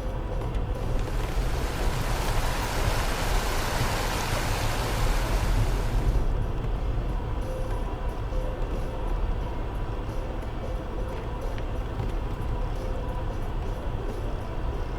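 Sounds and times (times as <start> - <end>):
car driving on rough track: 0.0 - 14.9
rushing hiss against car: 0.8 - 6.2.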